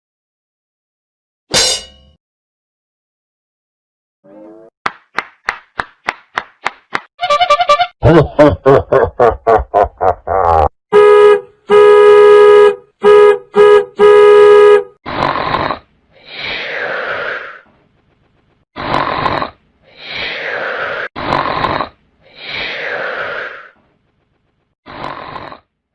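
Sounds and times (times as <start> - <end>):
car horn honking: 10.9 - 15.0
comic snoring effect: 15.0 - 17.6, 18.8 - 23.8, 24.8 - 25.8.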